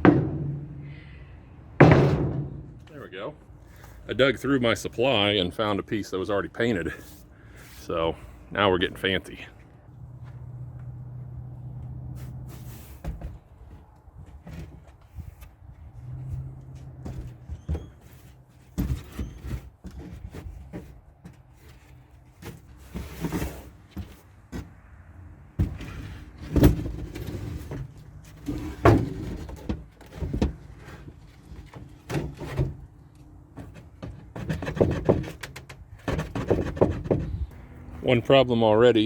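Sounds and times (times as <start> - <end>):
wooden board knocking and scraping: 0.0 - 0.7, 1.8 - 2.9, 25.6 - 32.8, 33.6 - 37.4.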